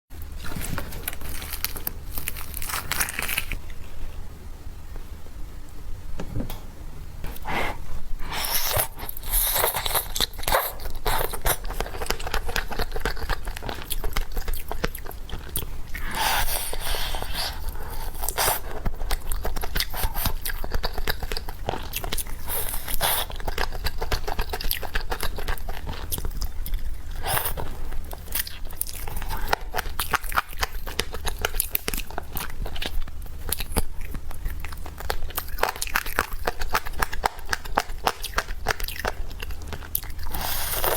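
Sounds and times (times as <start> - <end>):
person chewing chicken: 0.2 - 3.8, 7.5 - 40.9.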